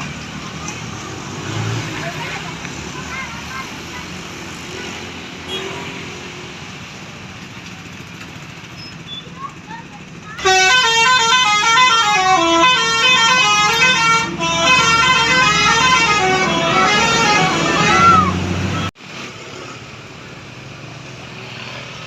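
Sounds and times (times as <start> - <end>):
multi-tone bus horn melody: 10.4 - 18.9.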